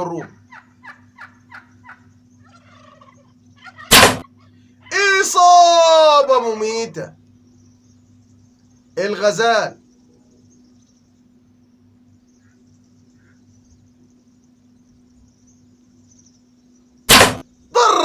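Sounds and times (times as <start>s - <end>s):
crickets chirring: 0.0s - 18.0s
loud crack of a bow shot: 3.9s - 4.3s, 17.1s - 17.4s.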